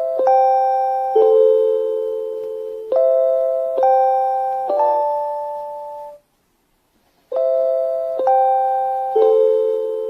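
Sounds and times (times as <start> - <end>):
electronic bell-like chime melody: 7.3 - 10.0.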